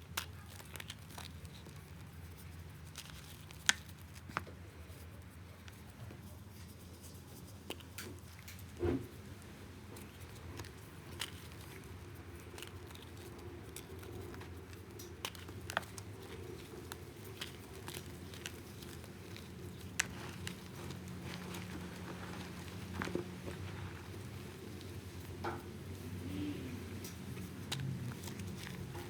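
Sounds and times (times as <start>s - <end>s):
chalk balls crushed and crackling: 0.0s - 29.0s.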